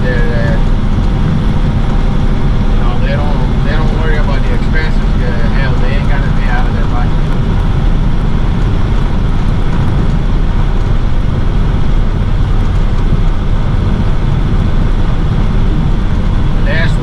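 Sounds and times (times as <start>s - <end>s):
truck engine and road noise: 0.0s - 17.0s.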